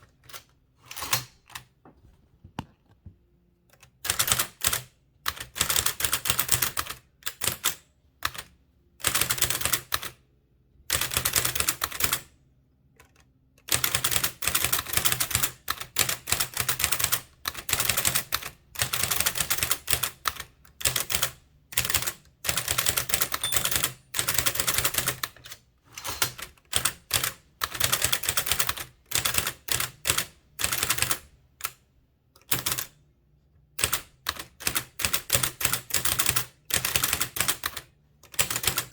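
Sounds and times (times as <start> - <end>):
typewriter keystrokes clicking: 13.1 - 31.2.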